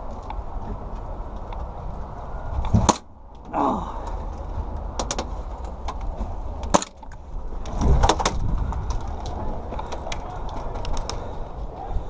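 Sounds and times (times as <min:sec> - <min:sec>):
wind on microphone: 0:05.7 - 0:12.0.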